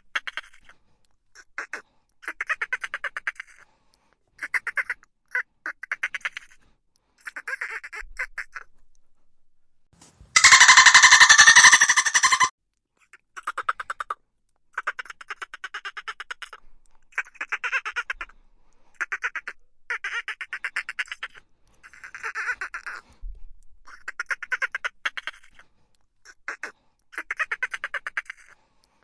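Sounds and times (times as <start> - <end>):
dolphin burst-pulse calls: 10.4 - 12.5.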